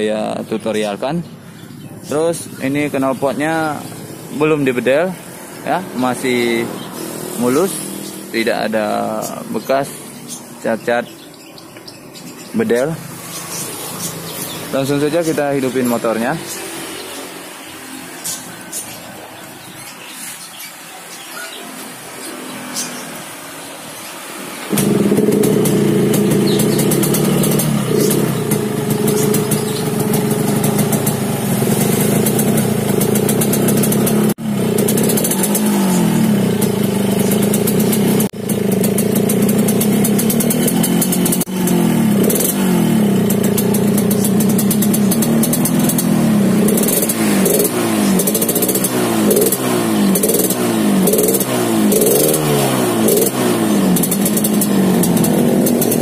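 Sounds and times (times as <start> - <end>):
two-stroke motorcycle engine revving: 2.0 - 20.7, 22.1 - 56.0.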